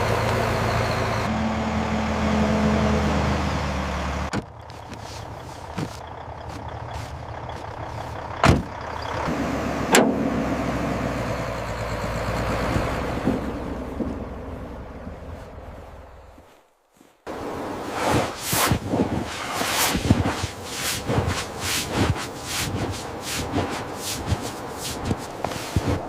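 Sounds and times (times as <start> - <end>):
heavy vehicle engine running: 0.0 - 16.6, 17.3 - 26.0
sharp loud knocks: 8.4 - 8.7.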